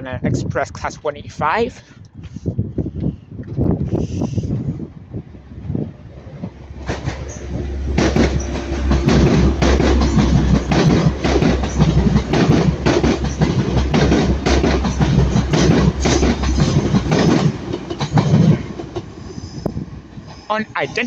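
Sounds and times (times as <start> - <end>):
train engine drone: 2.4 - 21.0
wheels clacking over rail joints: 6.3 - 19.2.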